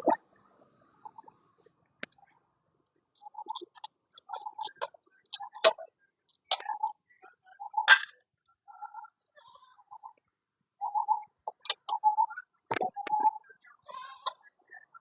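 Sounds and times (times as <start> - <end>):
hand tools clicking on metal: 7.9 - 8.1.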